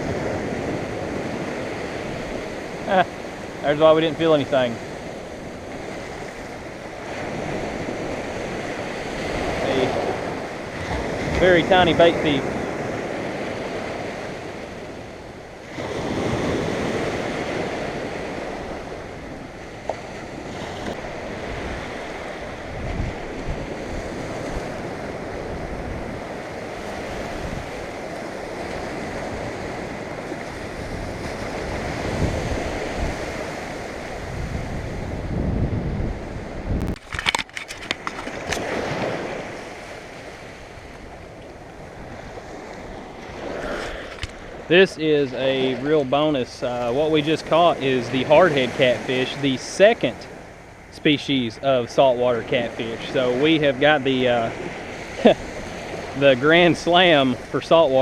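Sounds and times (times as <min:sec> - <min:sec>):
surf washing onto beach: 0:00.0 - 0:58.0
wind buffeting microphone: 0:00.0 - 0:58.0
sharp clicks or knocks: 0:36.8 - 0:38.7.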